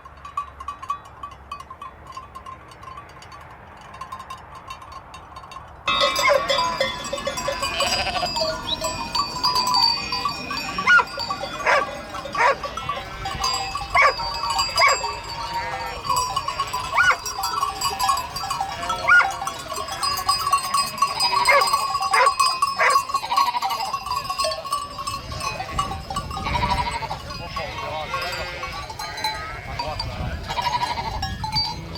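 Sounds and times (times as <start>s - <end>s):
flock bleating: 7.4s - 8.8s, 14.8s - 17.2s, 26.4s - 31.2s.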